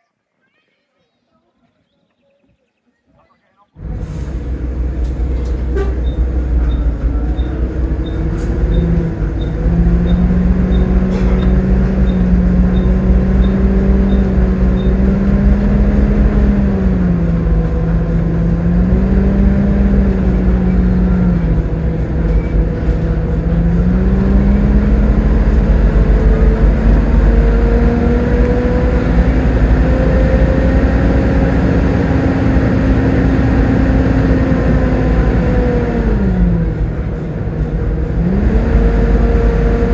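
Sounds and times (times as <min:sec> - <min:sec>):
bus engine rumble and whine: 0:03.8 - 0:39.9.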